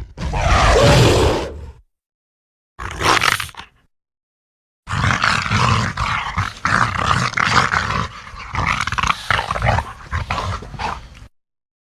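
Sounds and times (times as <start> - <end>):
gorilla growling and roaring: 0.0 - 1.8, 2.8 - 3.8, 4.9 - 11.2.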